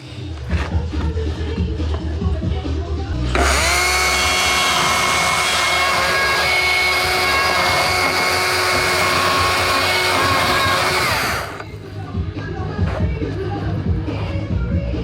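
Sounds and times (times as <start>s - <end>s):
power tool motor running: 3.2s - 11.7s.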